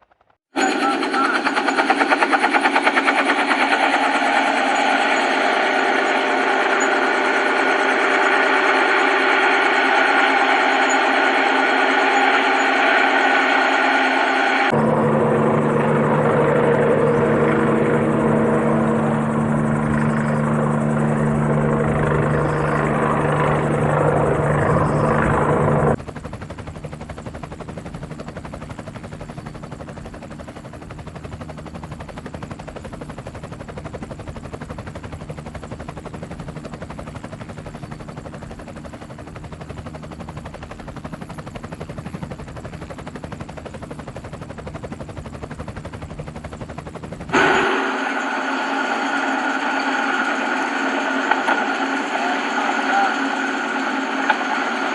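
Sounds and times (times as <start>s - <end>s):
helicopter rotor chop: 0.0s - 54.9s
helicopter turbine whine: 0.0s - 54.9s.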